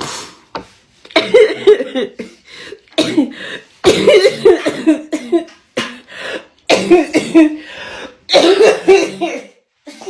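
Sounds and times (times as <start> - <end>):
woman coughing: 1.2 - 2.4, 3.0 - 6.1, 6.7 - 7.6, 8.3 - 10.0.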